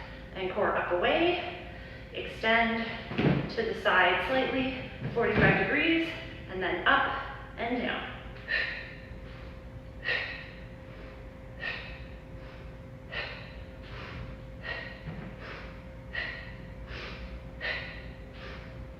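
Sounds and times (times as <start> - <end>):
person breathing during exercise: 1.7 - 2.2, 8.4 - 18.9.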